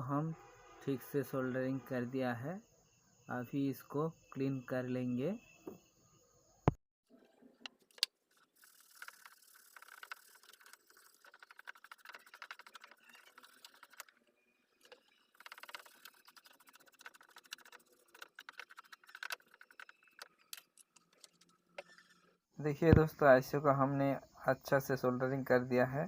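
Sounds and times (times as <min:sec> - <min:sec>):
scratchy scrubbing on circuit board: 0:08.3 - 0:14.1, 0:14.9 - 0:20.5.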